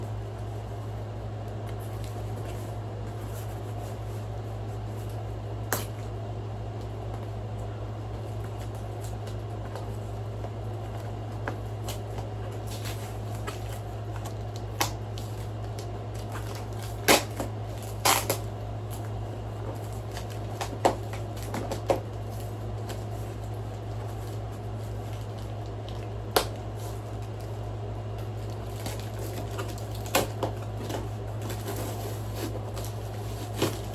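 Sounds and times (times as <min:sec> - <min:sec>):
low electrical hum: 0:00.0 - 0:33.9
box and packaging handled: 0:28.2 - 0:33.9.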